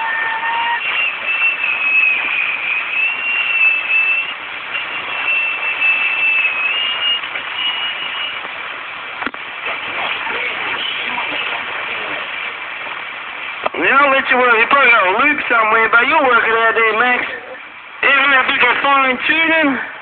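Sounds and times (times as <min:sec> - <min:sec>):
high wavering radio whistle: 0:00.0 - 0:08.5
radio receiver hiss: 0:00.0 - 0:20.0.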